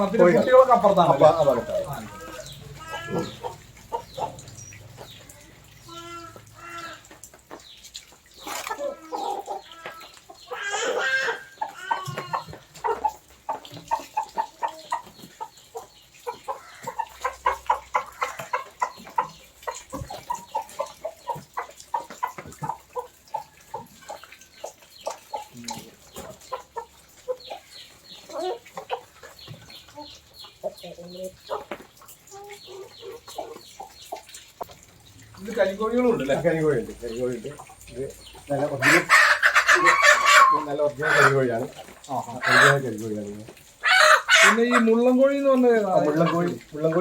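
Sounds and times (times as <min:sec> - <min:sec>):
hens clucking: 0:00.0 - 0:47.0
hen squawk: 0:01.5 - 0:04.4, 0:38.8 - 0:41.4, 0:42.4 - 0:42.8, 0:43.8 - 0:44.8.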